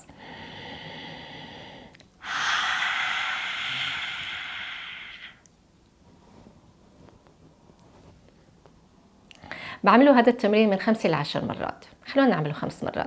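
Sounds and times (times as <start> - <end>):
woman inhaling softly: 0.0 - 5.4
woman exhaling forcefully: 0.2 - 5.4.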